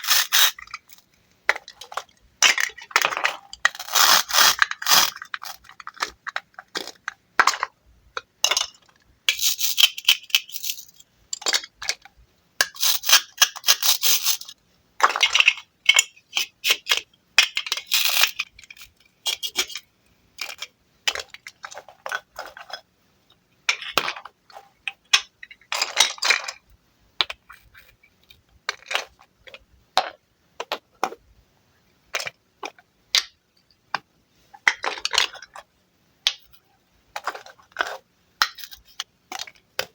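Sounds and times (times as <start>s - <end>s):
wooden pieces clicking and tapping: 23.7s - 31.2s, 32.2s - 34.1s, 36.2s - 39.9s.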